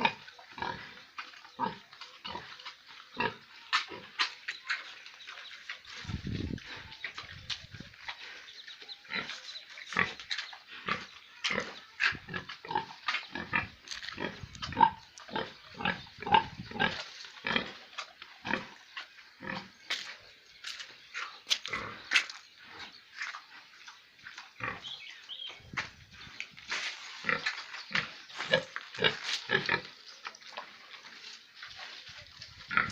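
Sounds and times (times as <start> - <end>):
piglets squealing and grunting: 32.7 - 32.9.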